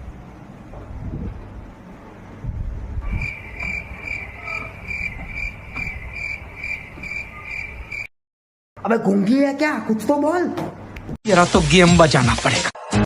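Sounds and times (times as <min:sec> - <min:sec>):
cricket chirping: 0:03.1 - 0:08.1.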